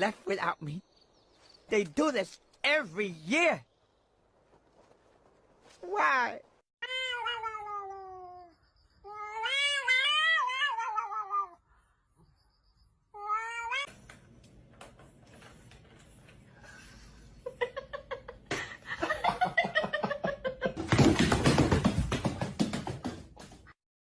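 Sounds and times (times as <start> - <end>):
cat meowing: 6.8 - 8.5, 9.1 - 11.6, 13.2 - 13.9.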